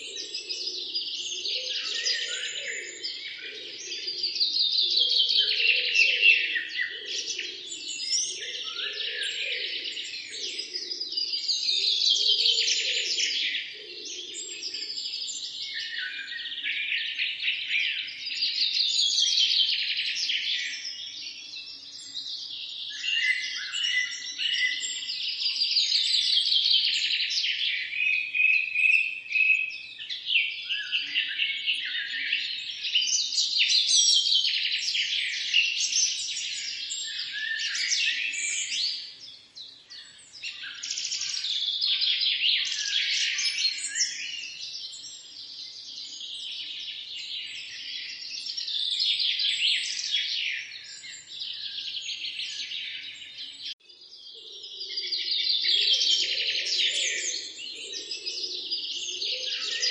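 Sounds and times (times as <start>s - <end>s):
songbirds chorus of chirps and trills: 0.0s - 59.9s.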